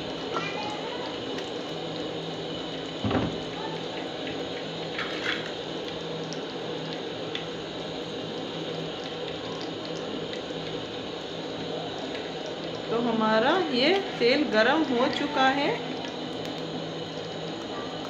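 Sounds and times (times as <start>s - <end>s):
oil hissing in frying pan: 0.0s - 18.0s
knock: 3.0s - 3.4s.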